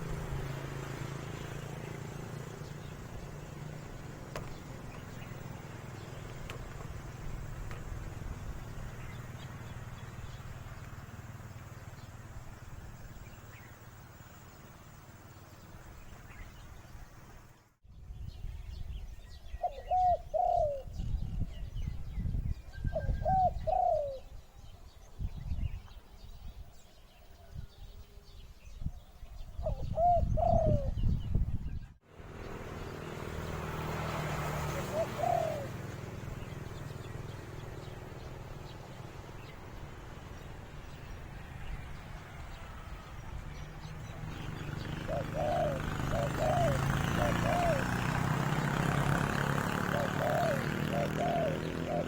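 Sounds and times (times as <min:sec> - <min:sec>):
handling noise: 0:04.2 - 0:08.6
wind noise: 0:17.9 - 0:26.8, 0:27.4 - 0:32.0
dove cooing: 0:19.7 - 0:20.9, 0:22.9 - 0:24.3, 0:29.7 - 0:31.0, 0:34.3 - 0:40.2, 0:44.3 - 0:52.0.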